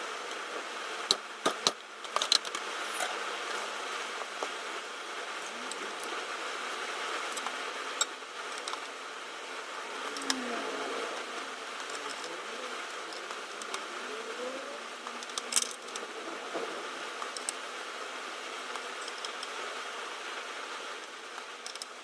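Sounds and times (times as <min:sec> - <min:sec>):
steady background hum: 0:00.0 - 0:22.0
small hard parts clicking and rattling: 0:01.1 - 0:03.6, 0:07.2 - 0:09.0, 0:11.2 - 0:13.9, 0:15.0 - 0:17.6, 0:18.7 - 0:19.6, 0:21.0 - 0:22.0.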